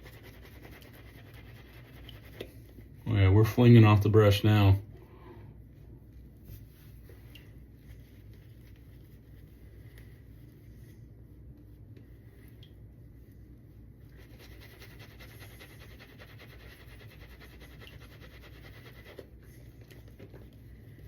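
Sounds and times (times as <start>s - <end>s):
shaving brush swishing lather: 0.0s - 2.8s, 14.0s - 20.9s.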